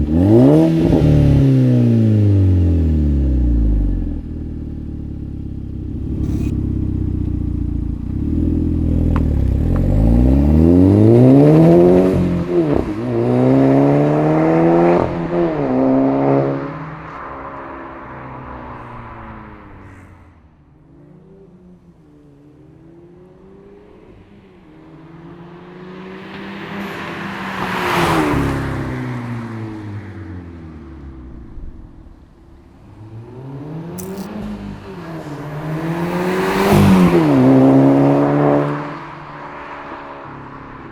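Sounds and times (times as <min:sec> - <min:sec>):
car engine revving: 0:22.2 - 0:39.6.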